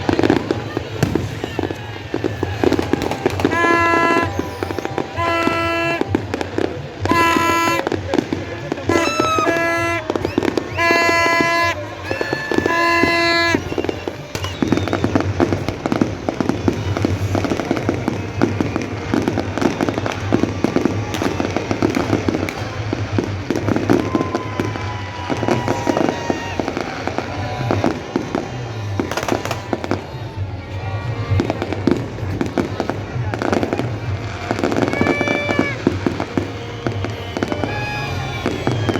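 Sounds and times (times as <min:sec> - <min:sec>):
fireworks bangs and crackling: 0:00.0 - 0:38.9
music: 0:00.1 - 0:38.9.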